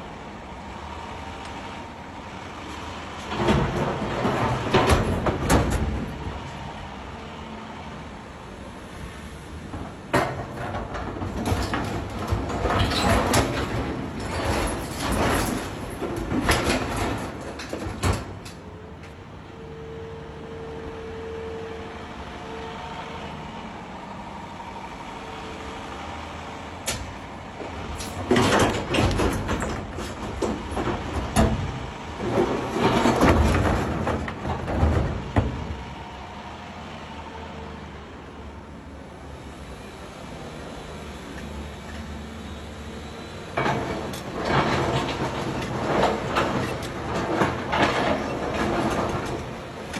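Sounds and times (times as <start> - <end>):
excavator engine running: 0.0 - 49.9
clattering and scraping: 9.7 - 18.6, 26.9 - 35.9, 43.6 - 49.9.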